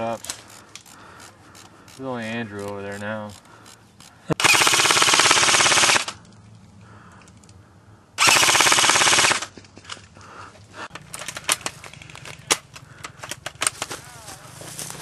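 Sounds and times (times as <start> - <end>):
airsoft gun firing full-auto: 4.4 - 6.2, 8.2 - 9.5.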